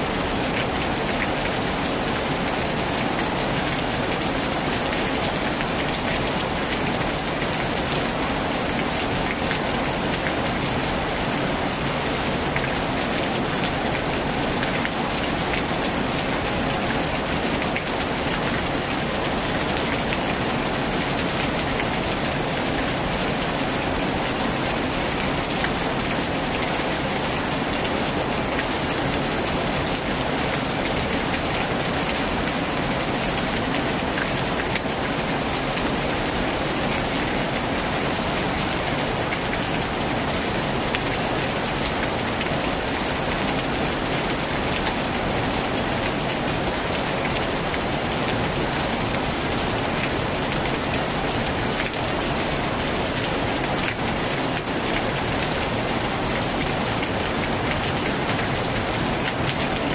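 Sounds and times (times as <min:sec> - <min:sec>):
heavy rain falling: 0:00.0 - 0:59.9.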